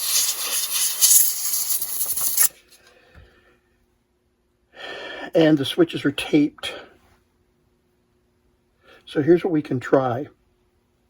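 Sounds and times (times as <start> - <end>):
loud harsh hiss: 0.0 - 2.5.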